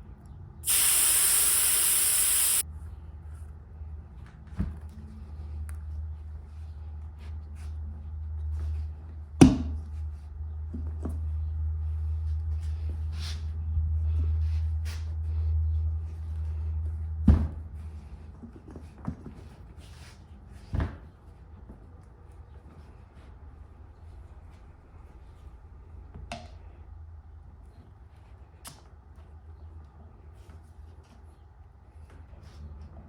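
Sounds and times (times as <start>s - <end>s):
steady low hum: 0.6s - 2.6s.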